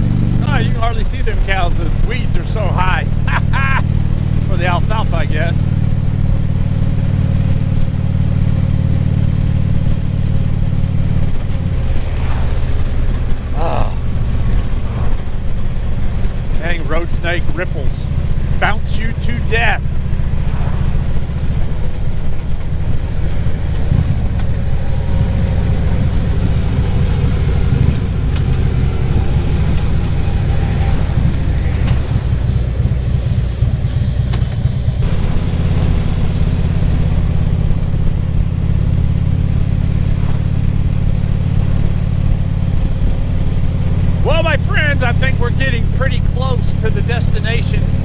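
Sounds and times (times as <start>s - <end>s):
motorcycle engine running: 0.0s - 48.0s
road noise: 0.0s - 48.0s
wind noise: 19.6s - 38.4s.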